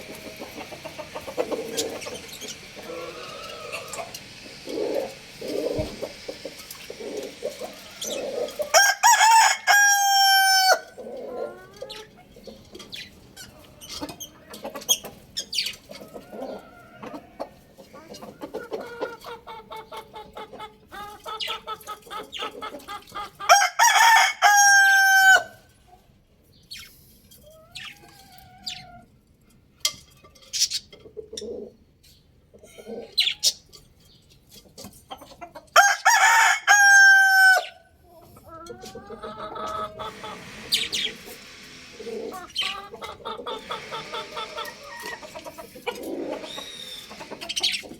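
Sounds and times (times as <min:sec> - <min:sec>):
small birds chirping: 0:00.0 - 0:08.7, 0:11.0 - 0:23.3, 0:26.5 - 0:29.0, 0:32.0 - 0:34.6, 0:37.6 - 0:47.9
chicken clucking: 0:00.0 - 0:26.1, 0:26.7 - 0:29.2, 0:30.1 - 0:47.9
rooster crowing: 0:02.8 - 0:04.2, 0:07.8 - 0:11.0, 0:23.5 - 0:25.6, 0:35.8 - 0:37.8, 0:43.6 - 0:45.4.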